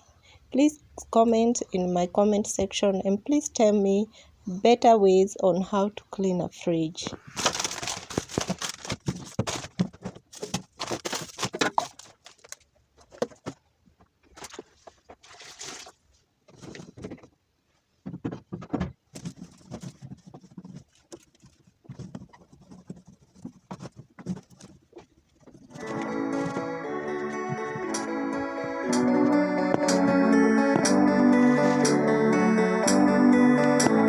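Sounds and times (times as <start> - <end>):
water splashing in a basin: 14.4 - 16.0.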